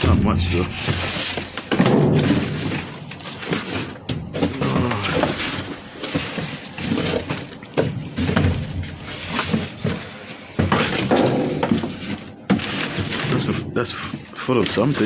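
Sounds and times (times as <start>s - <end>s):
knocks and clatters: 0.0s - 10.0s
rubbish rustling and scraping: 0.0s - 15.0s.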